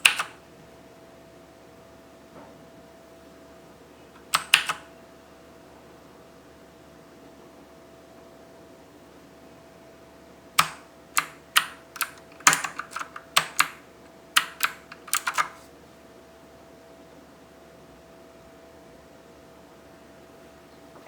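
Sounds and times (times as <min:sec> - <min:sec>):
clicky keyboard keystrokes: 0:00.0 - 0:00.4, 0:04.2 - 0:04.9, 0:10.6 - 0:13.8, 0:14.4 - 0:15.6.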